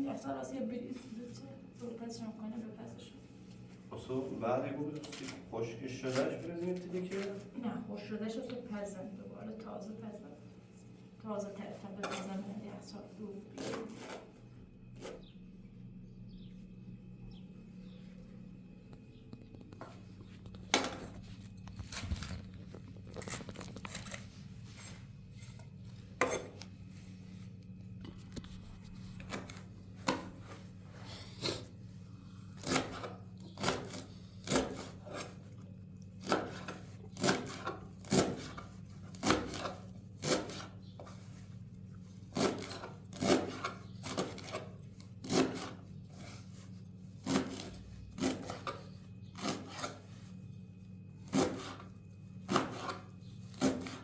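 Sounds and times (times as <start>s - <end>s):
steady low hum: 0.0s - 54.0s
knife chopping on a board: 32.6s - 35.4s, 36.2s - 41.2s, 42.3s - 46.3s, 47.2s - 48.8s, 49.4s - 50.0s, 51.2s - 54.0s.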